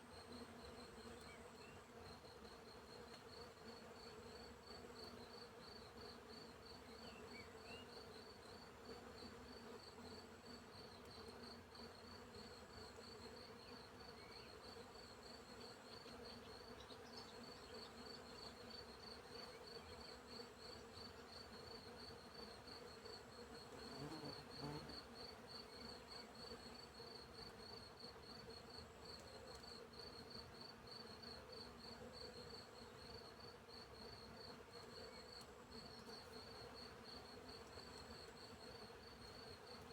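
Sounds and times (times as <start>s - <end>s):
bee buzzing close past: 23.4s - 25.4s
bees humming: 23.9s - 25.0s.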